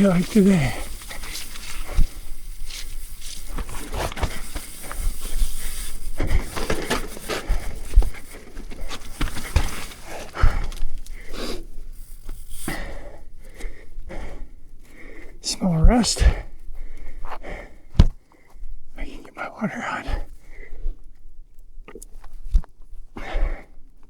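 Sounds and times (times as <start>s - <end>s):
mountain bike rattling and knocking: 0.0s - 11.1s
tyres and suspension thudding: 0.0s - 11.2s.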